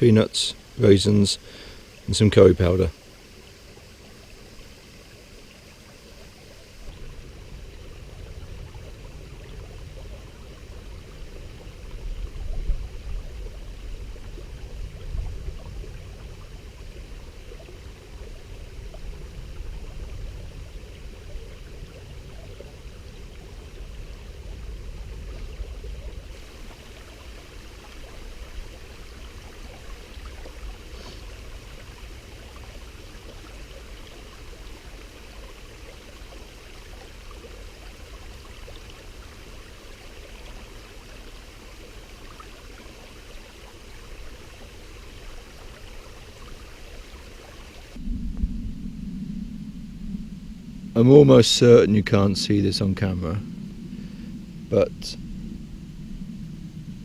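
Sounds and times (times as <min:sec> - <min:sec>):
running water rushing: 0:00.0 - 0:48.6, 0:49.8 - 0:57.0
low rumble: 0:47.8 - 0:57.0.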